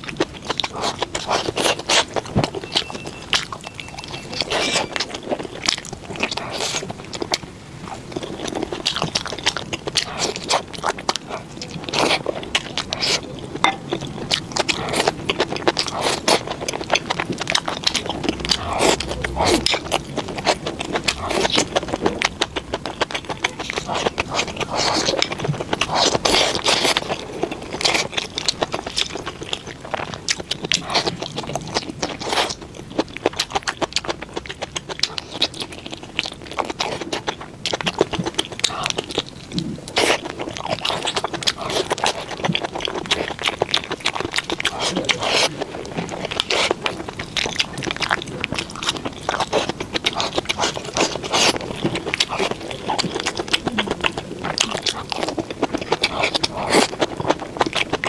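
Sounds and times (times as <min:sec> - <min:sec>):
person chewing food: 0:00.0 - 0:58.0.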